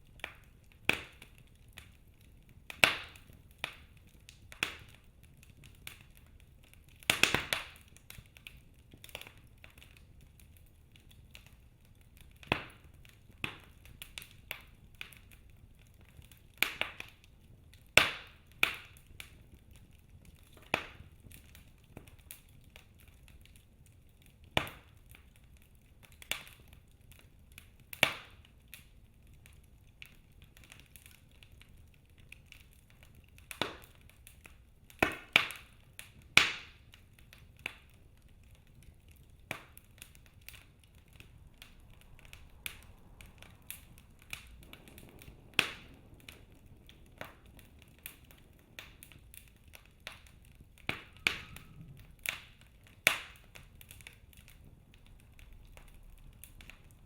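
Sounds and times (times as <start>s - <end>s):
wood fire crackling and popping: 0.0s - 57.0s
faint low rumble: 38.3s - 57.0s.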